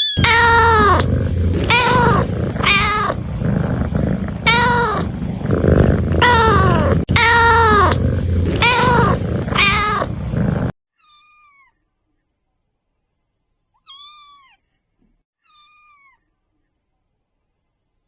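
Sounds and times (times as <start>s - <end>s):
kittens meowing: 0.0s - 11.3s
steady low hum: 0.2s - 10.7s.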